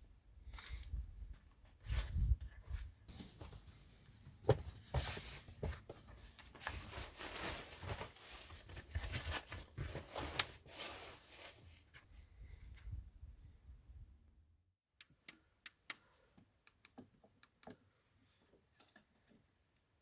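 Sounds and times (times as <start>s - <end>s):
rustling and crinkling: 0.4s - 13.0s.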